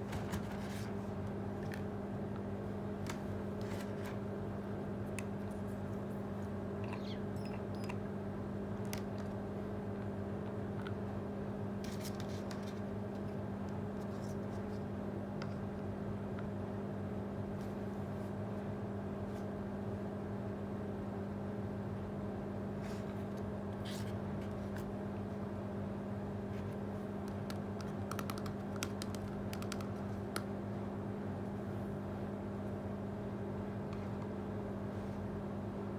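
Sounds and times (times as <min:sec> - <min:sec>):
steady low hum: 0:00.0 - 0:35.9.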